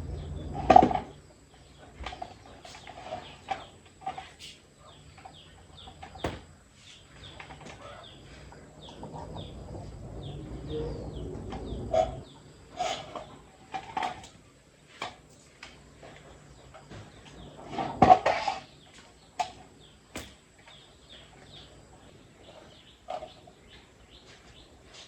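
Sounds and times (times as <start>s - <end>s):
chickens clucking: 0.0s - 14.2s
small birds chirping faintly: 0.0s - 25.0s.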